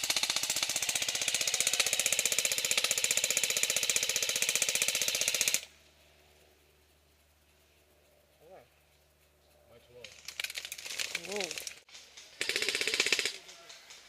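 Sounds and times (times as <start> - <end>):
airsoft gun full-auto firing: 0.0 - 5.7, 12.4 - 13.4.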